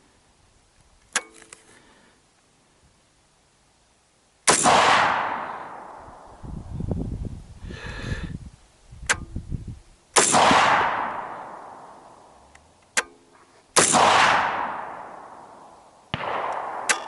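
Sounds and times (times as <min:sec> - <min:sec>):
rifle shots with rolling echo: 0:04.4 - 0:06.4, 0:10.2 - 0:12.4, 0:13.0 - 0:17.0
sharp clicks: 0:09.0 - 0:09.3.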